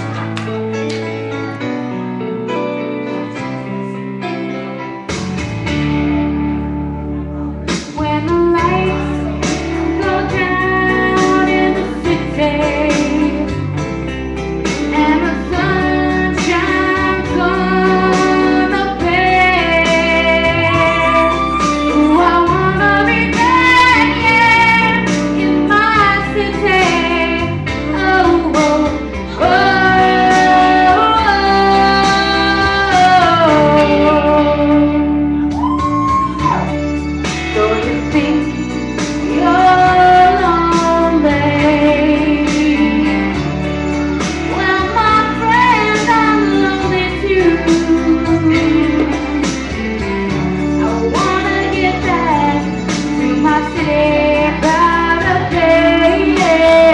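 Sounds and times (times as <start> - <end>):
woman singing: 7.9 - 13.7, 14.7 - 36.7, 37.5 - 43.5, 44.3 - 49.5, 50.8 - 56.9.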